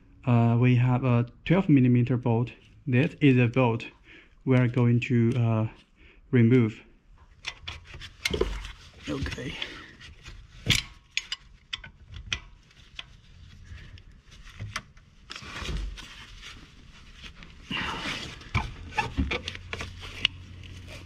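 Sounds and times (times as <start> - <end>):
wrench clicking and scraping on metal: 10.6 - 13.1.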